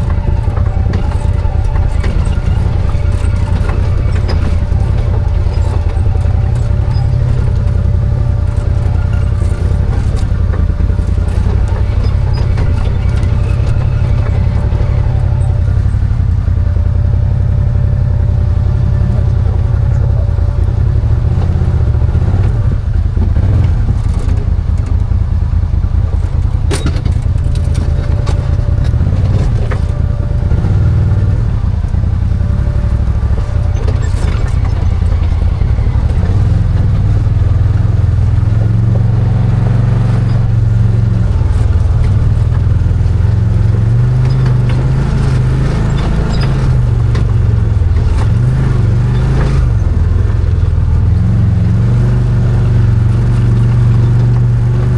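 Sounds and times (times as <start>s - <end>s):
sharp clicks and knocks: 0.0s - 16.4s, 22.4s - 54.9s
engine running loud and low: 0.0s - 54.9s.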